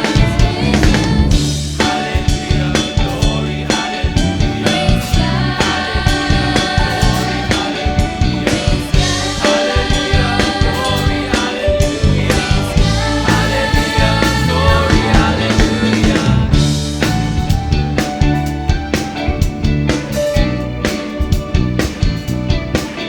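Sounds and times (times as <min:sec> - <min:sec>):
choir singing gospel song: 0:00.0 - 0:18.3
band accompaniment: 0:00.0 - 0:23.0
drum kit beat: 0:00.0 - 0:23.0.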